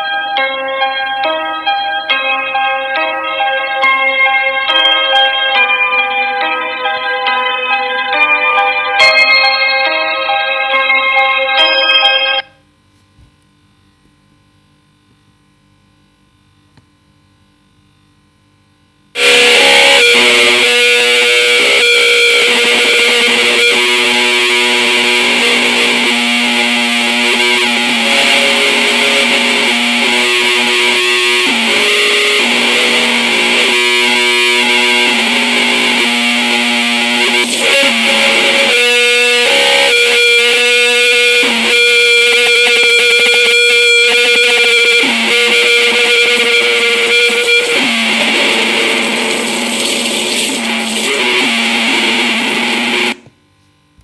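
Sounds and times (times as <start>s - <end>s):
distorted alarm tones: 19.2s - 53.2s.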